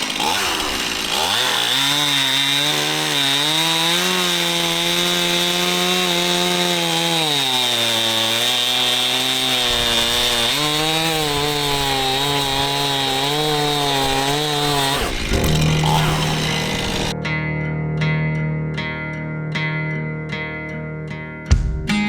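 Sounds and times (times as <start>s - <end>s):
chainsaw cutting wood: 0.0s - 17.1s.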